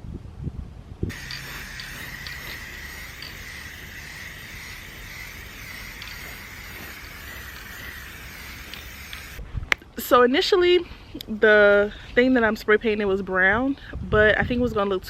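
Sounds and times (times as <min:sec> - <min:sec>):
spray paint can hissing: 0:01.1 - 0:09.4.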